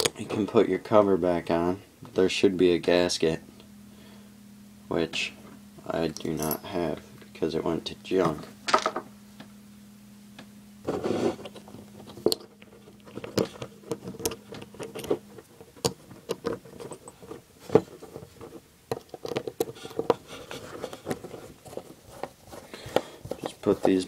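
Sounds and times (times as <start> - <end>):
clicks and scrapes of small parts: 10.9 - 24.0.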